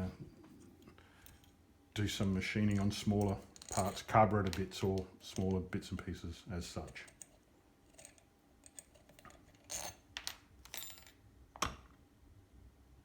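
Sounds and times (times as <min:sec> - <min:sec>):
small metal parts clicking: 0:02.7 - 0:05.6, 0:06.8 - 0:11.2.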